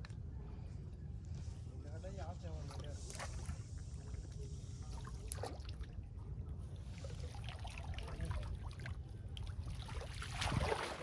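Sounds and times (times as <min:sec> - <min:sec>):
water trickling and splashing: 0:06.8 - 0:11.0.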